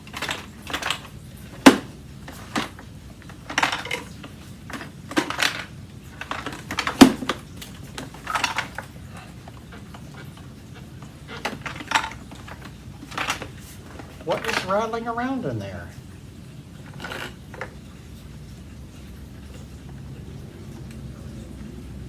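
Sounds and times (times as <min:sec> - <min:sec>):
loose plastic parts rattling: 0:00.0 - 0:15.2, 0:16.8 - 0:18.0.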